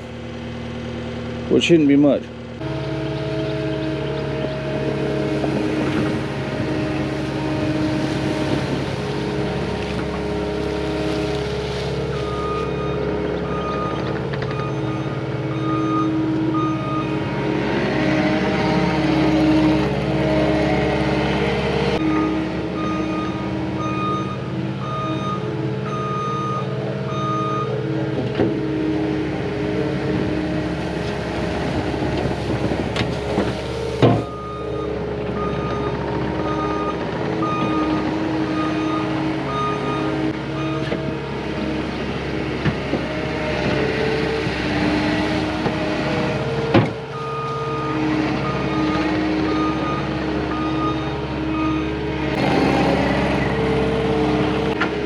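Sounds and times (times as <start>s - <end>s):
loader diesel engine running: 0.0s - 55.0s
reverse alarm beeping: 12.2s - 17.2s, 22.0s - 27.8s, 34.2s - 40.9s, 47.1s - 52.0s.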